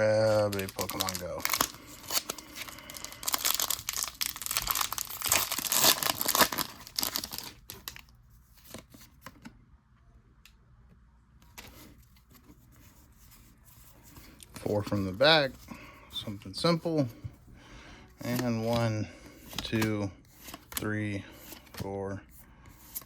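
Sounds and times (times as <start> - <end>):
foil wrapper tearing and crinkling: 0.0 - 8.1.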